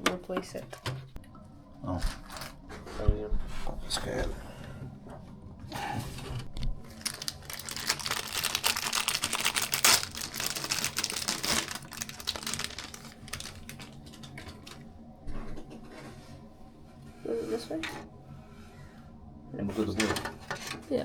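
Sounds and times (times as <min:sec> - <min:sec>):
computer hardware clicking and rattling: 0:06.5 - 0:14.8.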